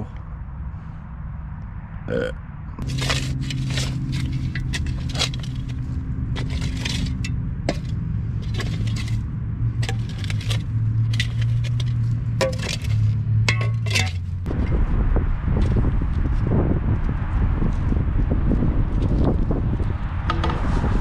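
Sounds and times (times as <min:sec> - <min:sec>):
low motor hum: 0:00.0 - 0:21.0
metal and brick rubble scraping: 0:02.8 - 0:14.8.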